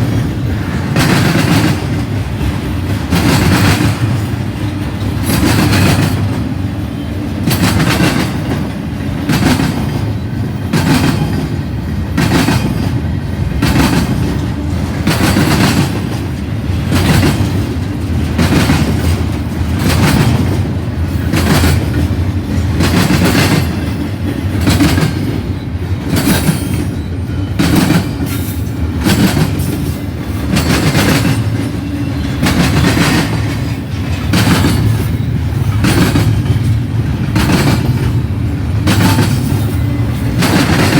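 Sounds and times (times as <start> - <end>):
freight cars rumbling: 0.0 - 40.9
wheels clickety-clack on rail joints: 0.0 - 40.9.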